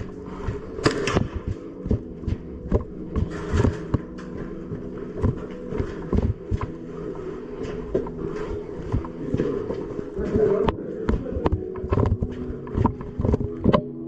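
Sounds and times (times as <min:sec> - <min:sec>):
footsteps with gear knocking: 0:00.0 - 0:14.0
steady low hum: 0:00.0 - 0:14.0.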